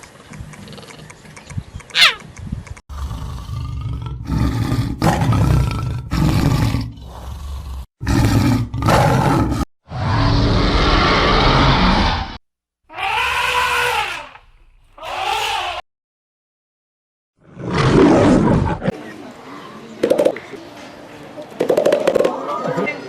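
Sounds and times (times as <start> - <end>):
animal roars and growls: 2.9 - 14.4, 17.4 - 19.0.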